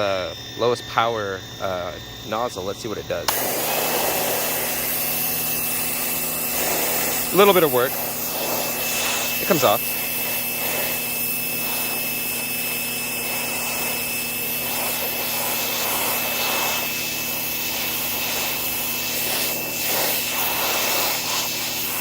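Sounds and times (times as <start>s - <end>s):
electric motor hum: 0.0s - 22.0s
pressure washer jet hissing on wood: 2.3s - 22.0s.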